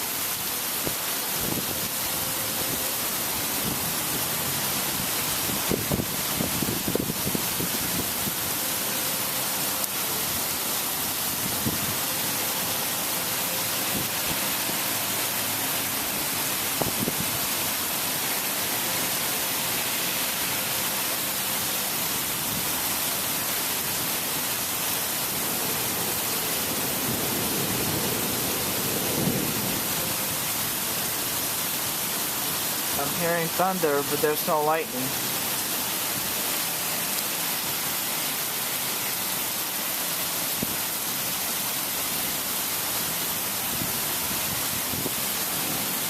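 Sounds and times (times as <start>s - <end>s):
heavy rain falling: 0.0s - 46.0s
distant thunder rumble: 25.4s - 30.7s.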